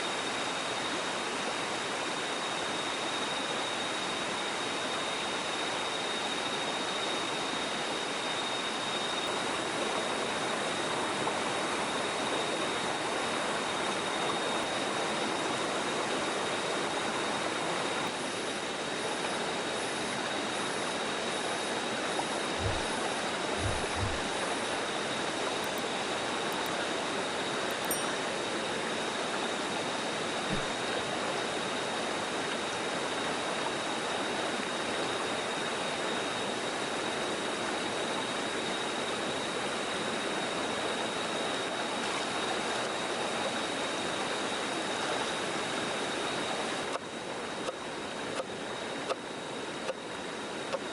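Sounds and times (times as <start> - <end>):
stream water rushing: 21.7 - 35.4
soft low thumps: 22.6 - 23.0, 23.6 - 24.3
high-pitched tone: 27.7 - 28.3.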